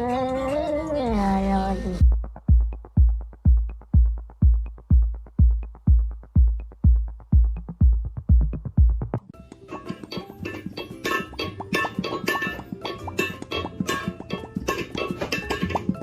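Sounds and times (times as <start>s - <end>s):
electronic dance music: 1.1s - 9.2s.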